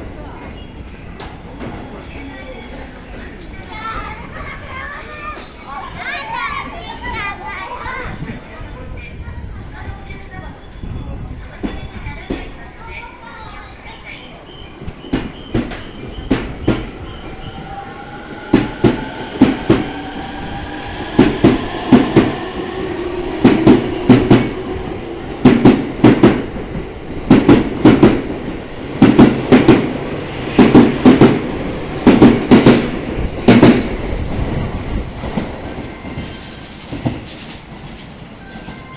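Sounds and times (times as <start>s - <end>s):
train wheels clattering over rail joints: 18.3s - 38.8s.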